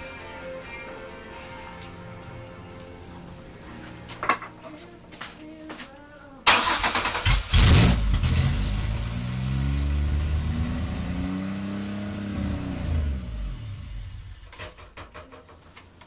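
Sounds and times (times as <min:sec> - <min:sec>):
car engine revving and dying: 0:06.5 - 0:14.5.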